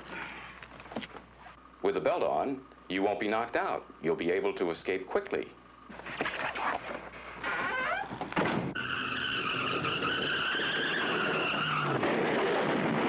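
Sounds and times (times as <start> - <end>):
tyres screeching: 5.9 - 12.0
road and engine noise: 8.7 - 13.0.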